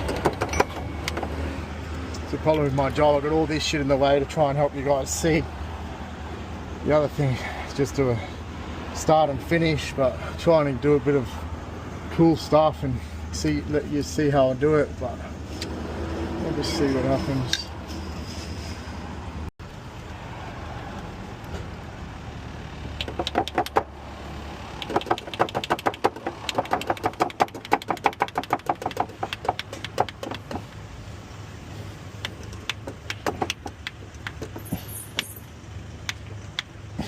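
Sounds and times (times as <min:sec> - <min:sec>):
hand tools clicking: 0:24.8 - 0:30.8.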